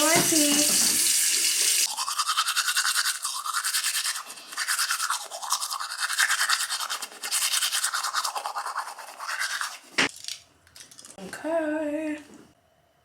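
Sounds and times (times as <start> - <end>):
toothbrush scrubbing teeth: 1.8 - 10.0.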